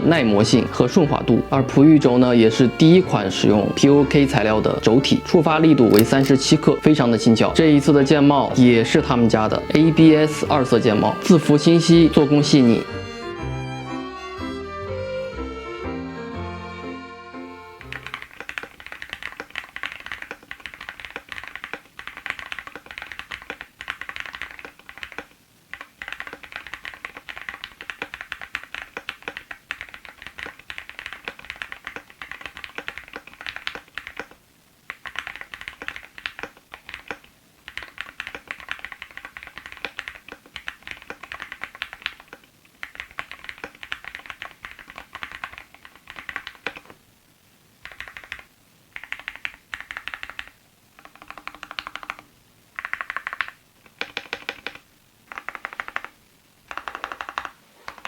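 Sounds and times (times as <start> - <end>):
mechanical keyboard typing: 4.7 - 6.5, 17.8 - 47.0, 47.8 - 58.0.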